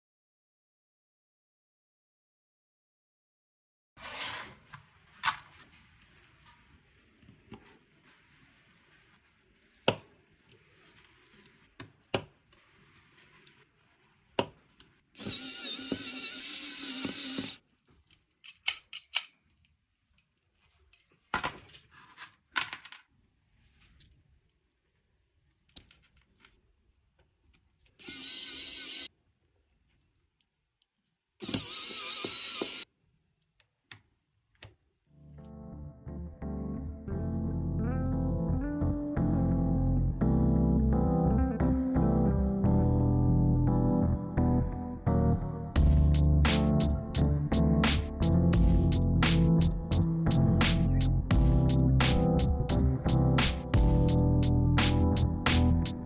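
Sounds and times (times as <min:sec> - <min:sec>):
small power tool running: 0:15.2 - 0:17.6, 0:28.0 - 0:29.1, 0:31.4 - 0:32.8
tools clicking on a workbench: 0:18.1 - 0:19.6.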